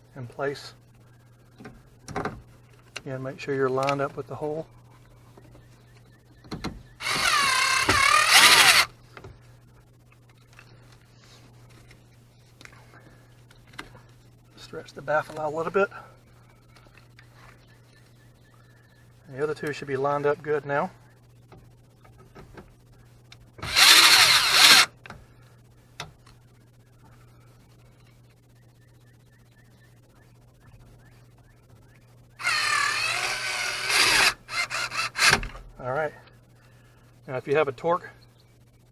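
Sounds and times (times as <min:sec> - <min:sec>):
power drill motor whining: 0:07.0 - 0:08.9, 0:23.6 - 0:24.9, 0:32.4 - 0:35.4.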